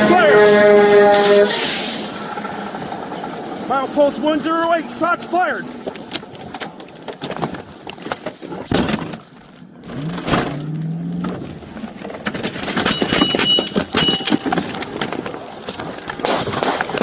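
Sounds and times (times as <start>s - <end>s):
vehicle engine running: 0.0s - 7.8s.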